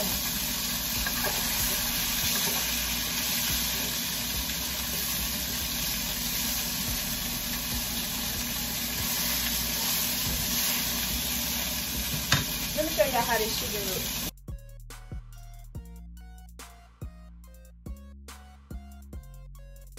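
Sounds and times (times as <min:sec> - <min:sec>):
chicken sizzling in hot oil: 0:00.0 - 0:14.3.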